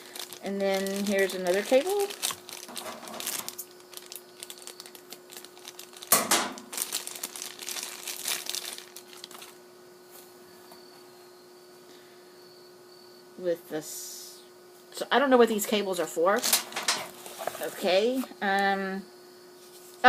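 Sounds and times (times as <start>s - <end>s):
packaging crinkling and rustling: 0.0s - 9.6s, 16.4s - 18.2s
faint steady hum: 0.0s - 20.0s.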